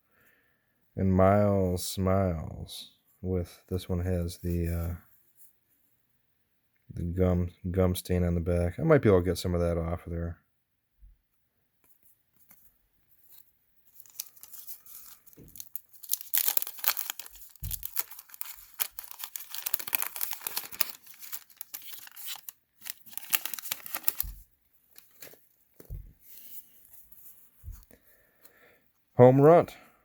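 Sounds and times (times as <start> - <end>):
wax paper wrapper tearing: 13.9 - 25.4.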